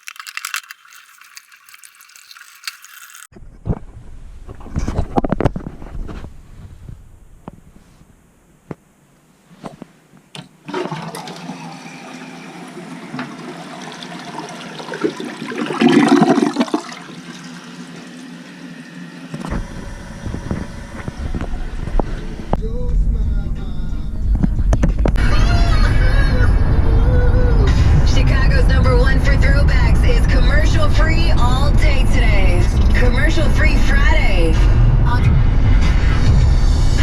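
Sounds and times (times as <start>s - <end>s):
water rushing into sink: 0.0s - 3.3s, 10.7s - 19.0s.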